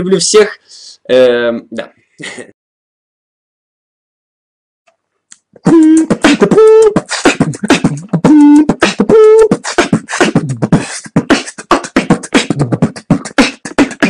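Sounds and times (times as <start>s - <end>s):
beatboxing: 5.6s - 14.0s
hummed notes: 5.6s - 14.0s.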